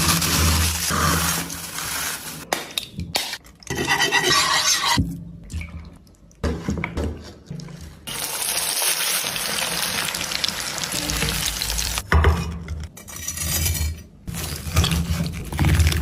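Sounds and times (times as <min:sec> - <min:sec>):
chicken frying in hot oil: 0:08.1 - 0:12.0.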